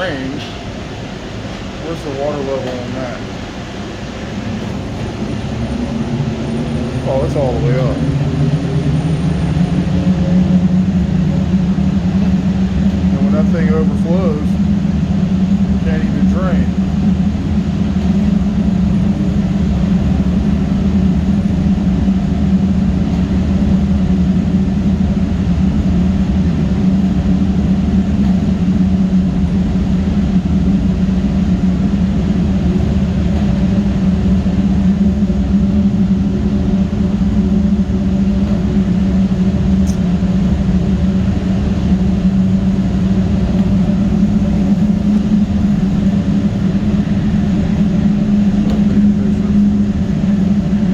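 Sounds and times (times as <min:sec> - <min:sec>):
boiler-room machinery drone: 0:00.0 - 0:50.9.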